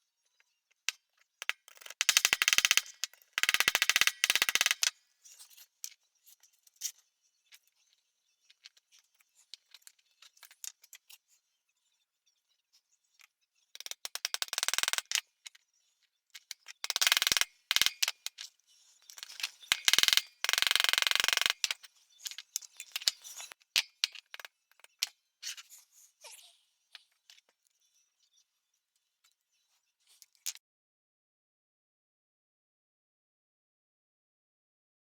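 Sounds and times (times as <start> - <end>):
small metal clicks: 0.9 - 6.0, 13.8 - 15.6, 16.4 - 25.6
rapid clicking and scraping: 1.4 - 5.5, 19.0 - 25.1.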